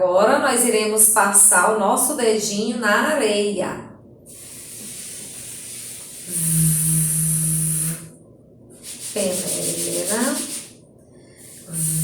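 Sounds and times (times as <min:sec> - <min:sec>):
woman making buzzing v sound: 0:04.3 - 0:08.1, 0:11.4 - 0:12.0.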